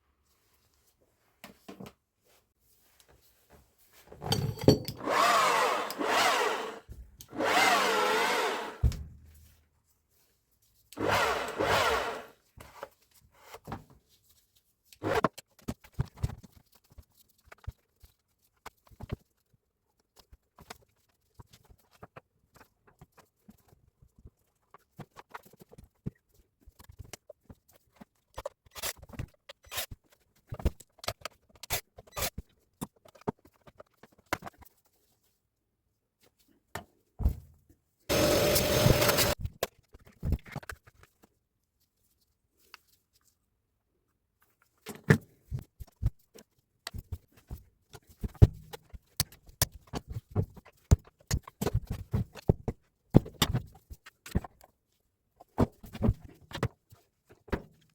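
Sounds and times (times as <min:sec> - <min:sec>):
tools and metal parts clinking: 0:04.2 - 0:05.2.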